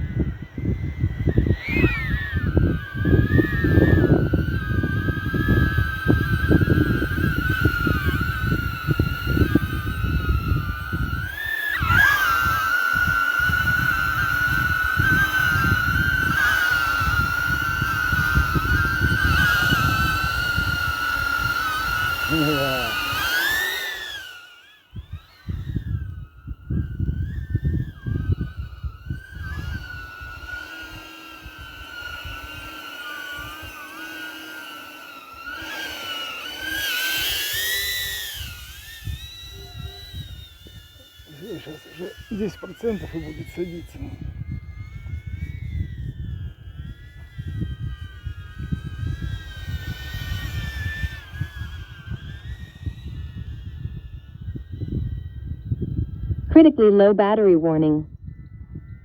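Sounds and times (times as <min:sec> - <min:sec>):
drone propellers whining: 0:00.0 - 0:59.0.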